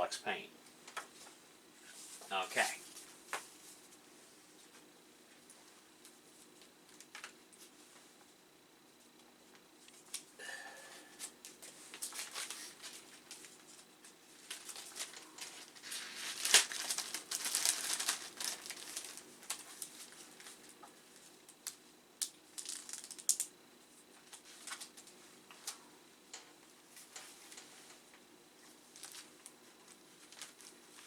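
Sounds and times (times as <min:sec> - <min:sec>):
paper crinkling and rustling: 0:11.5 - 0:20.8, 0:22.6 - 0:23.4, 0:24.2 - 0:25.8, 0:28.8 - 0:31.0.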